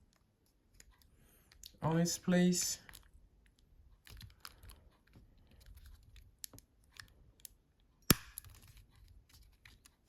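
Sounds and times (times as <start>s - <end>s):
plastic parts clicking and scraping: 2.8s - 10.0s.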